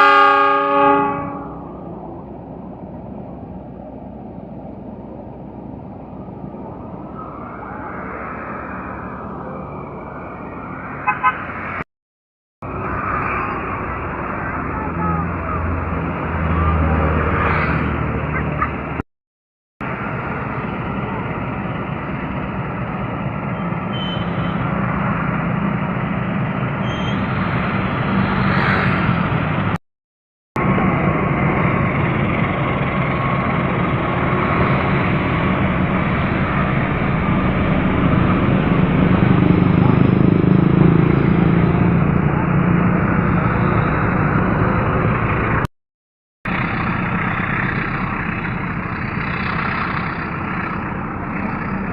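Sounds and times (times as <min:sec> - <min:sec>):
train rumbling on rails: 0:00.0 - 0:11.8, 0:19.8 - 0:29.8, 0:30.6 - 0:45.7, 0:46.5 - 0:51.9
train rumbling past: 0:30.6 - 0:45.7, 0:46.5 - 0:51.9.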